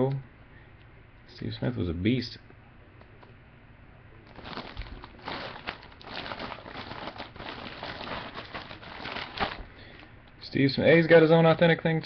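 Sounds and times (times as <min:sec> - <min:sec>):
packaging crinkling: 0:04.2 - 0:10.1.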